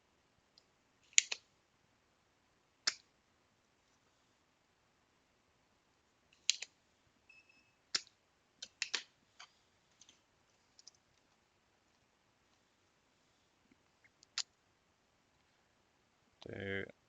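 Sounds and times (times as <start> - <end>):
short high beep: 7.3 - 7.8.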